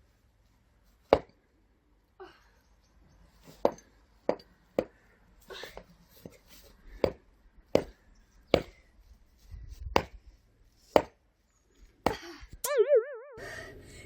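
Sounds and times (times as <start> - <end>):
axe chopping firewood: 1.1 - 1.4, 3.6 - 5.0, 7.0 - 8.8, 10.0 - 10.2, 11.0 - 11.2, 12.0 - 12.3
warbling electronic tone: 12.6 - 14.0.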